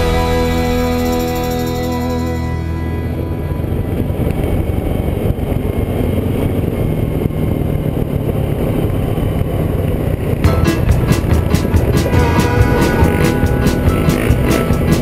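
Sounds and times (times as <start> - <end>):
music: 0.0 - 3.9, 10.4 - 15.0
off-road vehicle engine rumble: 0.0 - 15.0.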